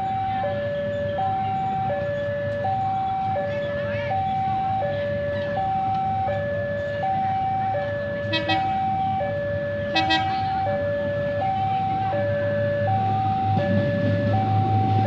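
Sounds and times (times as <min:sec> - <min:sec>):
level crossing two-tone alarm: 0:00.0 - 0:15.0
low rumble: 0:11.9 - 0:15.0.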